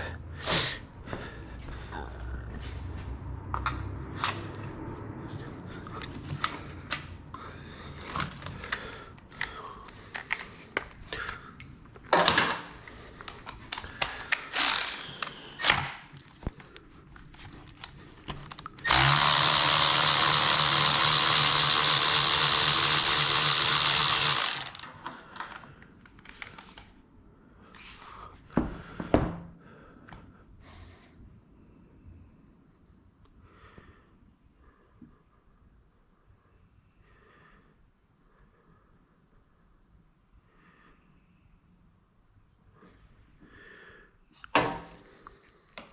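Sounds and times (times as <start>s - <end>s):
tools clicking and clattering: 13.2s - 16.3s, 17.6s - 26.7s
power tool whirring: 14.4s - 15.9s, 18.8s - 25.0s.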